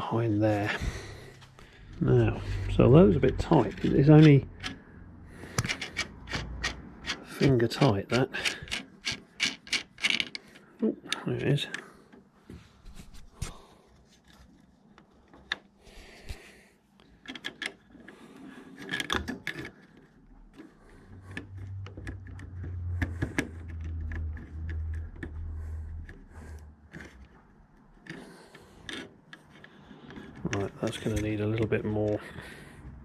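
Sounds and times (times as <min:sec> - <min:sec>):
low hum: 0:00.0 - 0:05.6, 0:20.8 - 0:27.5
small clicks taps and rubbing: 0:05.5 - 0:13.4, 0:18.8 - 0:32.2.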